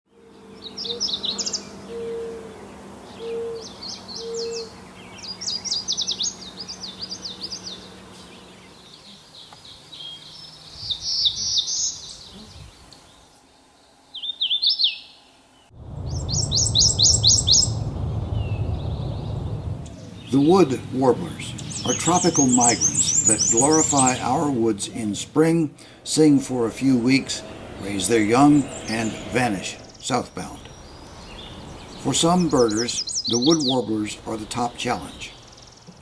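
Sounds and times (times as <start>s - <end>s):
low hooting note: 15.7s - 35.2s
warblers singing: 16.1s - 35.9s.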